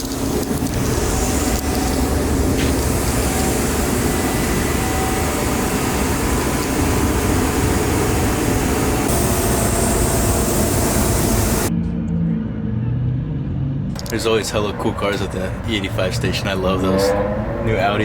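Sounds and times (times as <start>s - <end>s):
car engine running: 0.0s - 11.7s
road and wind noise: 0.0s - 18.0s.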